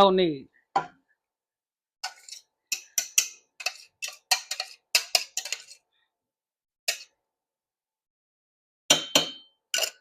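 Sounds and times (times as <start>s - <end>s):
utensil clinking against a pan: 2.0s - 5.8s, 8.9s - 10.0s.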